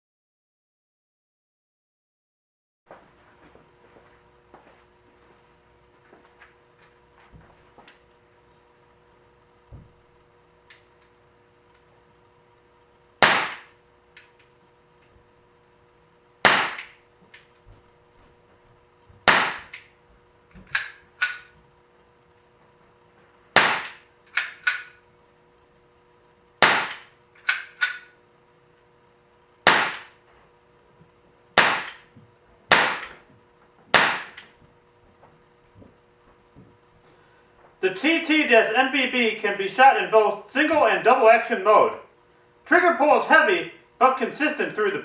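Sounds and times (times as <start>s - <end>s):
air pistol shots cracking: 13.2s - 13.8s, 16.4s - 17.0s, 19.2s - 19.8s, 23.5s - 25.0s, 26.6s - 28.1s, 29.6s - 30.2s, 31.6s - 32.1s, 32.7s - 33.2s, 33.9s - 34.5s.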